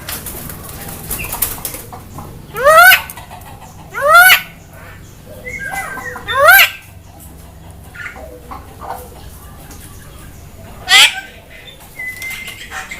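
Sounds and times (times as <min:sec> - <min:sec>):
bird calls sweeping upward: 0:02.4 - 0:07.0, 0:10.8 - 0:12.9.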